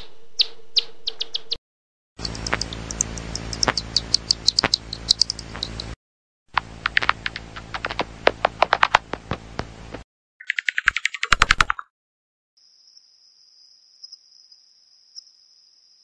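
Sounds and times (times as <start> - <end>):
bats squeaking: 2.2 - 6.0.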